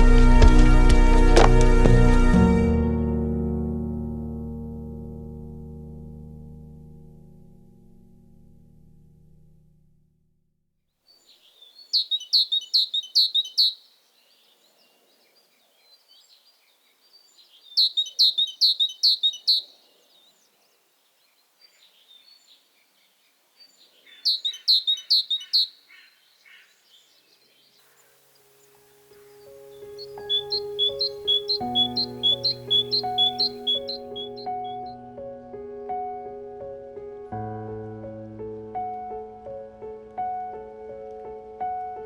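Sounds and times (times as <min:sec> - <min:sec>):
songbird singing: 0:11.0 - 0:35.0
faint bird chirps: 0:11.1 - 0:34.9.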